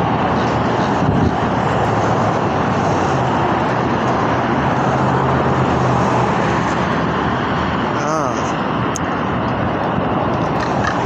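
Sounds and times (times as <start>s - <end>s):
motor vehicle rush: 0.0s - 11.0s.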